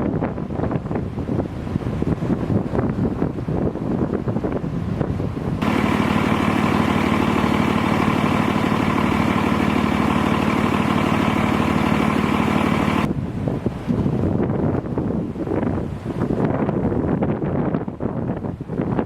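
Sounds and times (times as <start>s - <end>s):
wind on microphone: 0.0s - 19.0s
engine idling: 5.6s - 13.1s.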